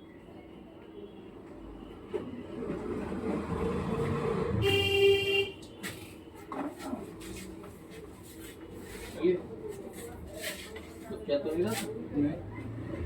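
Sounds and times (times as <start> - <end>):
street traffic passing: 0.0 - 13.0
vehicle horn honk: 4.6 - 5.7.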